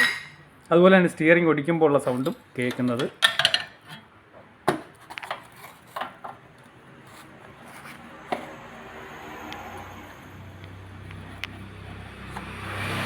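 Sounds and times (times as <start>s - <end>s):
metal parts knocking and clinking: 2.6s - 4.0s.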